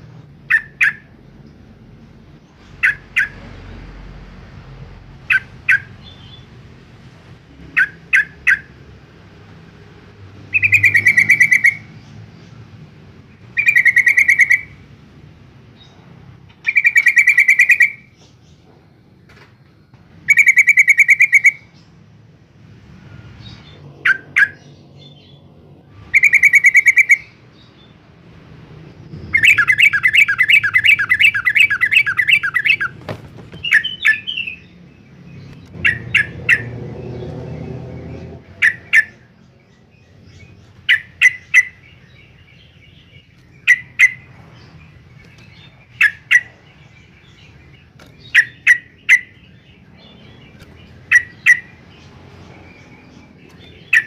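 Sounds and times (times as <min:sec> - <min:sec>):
bulbul calling: 0:00.4 - 0:01.2, 0:02.6 - 0:03.5, 0:05.2 - 0:06.5, 0:07.6 - 0:08.8, 0:10.5 - 0:12.1, 0:13.5 - 0:14.8, 0:15.8 - 0:18.4, 0:20.2 - 0:21.8, 0:23.4 - 0:25.3, 0:26.0 - 0:27.9, 0:29.1 - 0:34.8, 0:35.4 - 0:36.8, 0:38.4 - 0:54.0.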